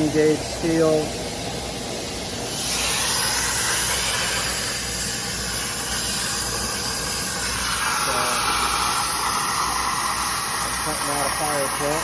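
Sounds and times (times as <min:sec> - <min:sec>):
plasma cutter hissing: 0:02.4 - 0:12.0.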